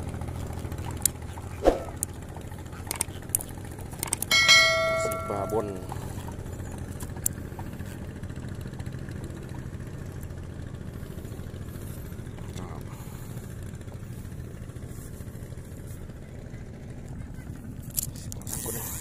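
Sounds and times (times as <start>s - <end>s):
small engine idling: 0.0s - 19.0s.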